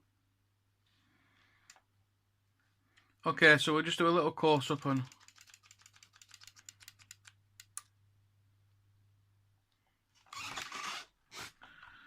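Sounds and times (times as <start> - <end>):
faint low hum: 6.9 - 10.8.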